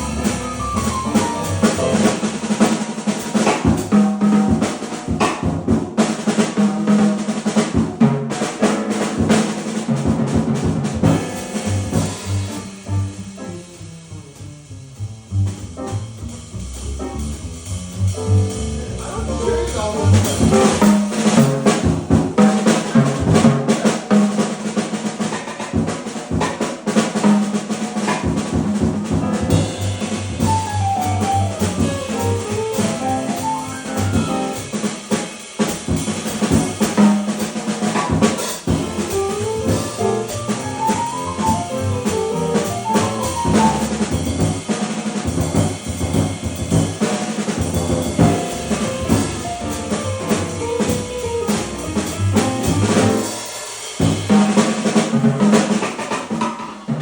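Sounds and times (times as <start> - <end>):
bass line: 0.0 - 2.7, 10.9 - 21.3, 28.7 - 34.8, 38.7 - 44.6, 47.6 - 53.3
drum kit playing: 0.0 - 57.0
jazz melody: 0.0 - 57.0.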